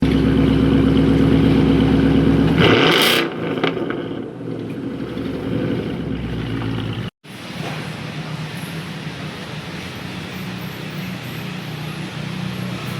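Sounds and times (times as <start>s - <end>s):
car engine running: 0.0s - 7.1s.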